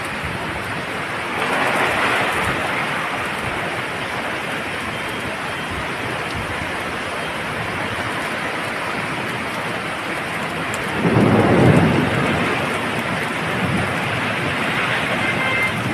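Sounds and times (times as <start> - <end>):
heavy rain: 0.0 - 15.9
thunder rumbling: 5.8 - 15.9.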